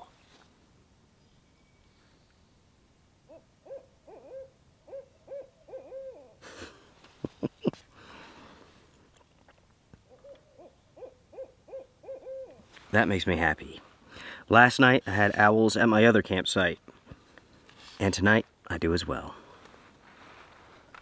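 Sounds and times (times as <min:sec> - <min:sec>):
owl hooting: 0:03.3 - 0:06.4, 0:10.1 - 0:12.7.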